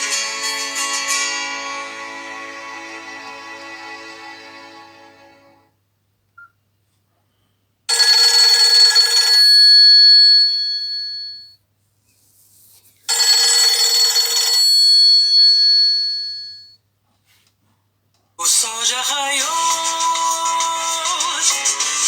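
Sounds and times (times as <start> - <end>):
phone ringtone telephone bell: 7.9 - 11.6, 13.1 - 16.8.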